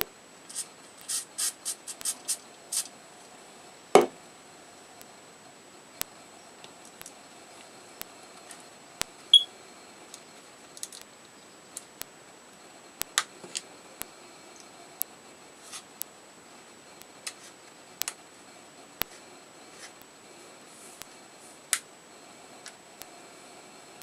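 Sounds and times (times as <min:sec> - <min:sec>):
sharp high chirp: 0:09.3 - 0:09.5.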